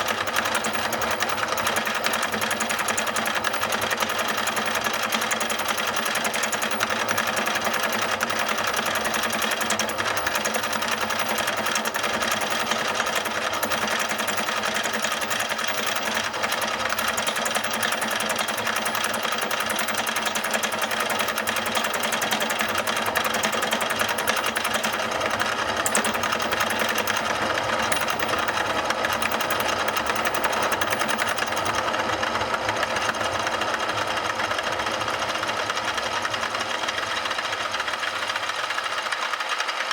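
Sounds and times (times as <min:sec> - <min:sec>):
milling machine cutting metal: 0:00.0 - 0:31.8.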